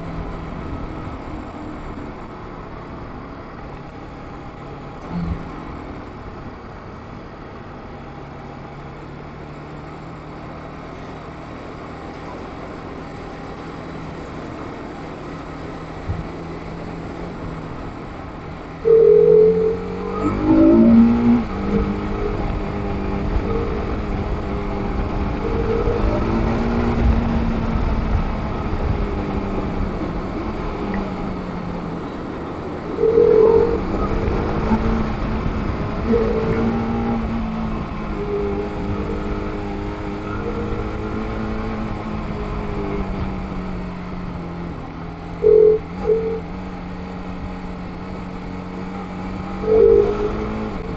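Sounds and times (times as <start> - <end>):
wind rumble: 11.2 - 50.9
short loud tones: 18.8 - 21.4.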